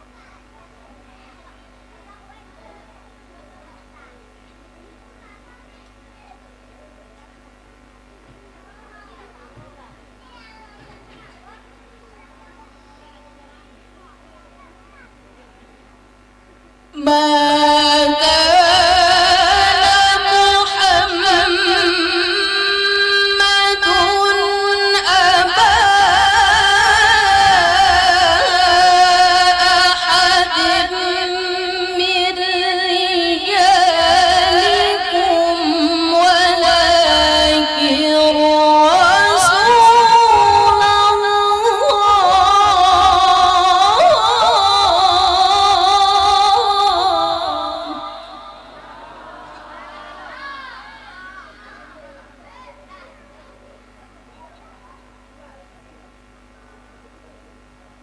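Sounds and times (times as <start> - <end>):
woman reciting melodically: 16.2 - 56.6.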